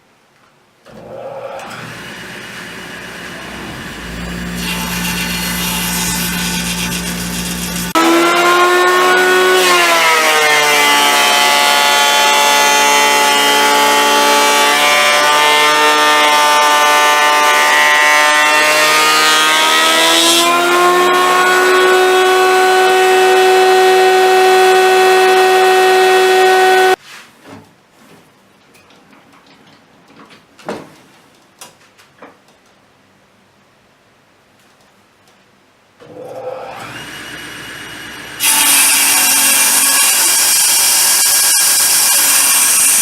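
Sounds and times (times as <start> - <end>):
power tool motor running: 1.6 - 9.7, 18.7 - 27.0
faint knocks and clicks: 28.6 - 32.8.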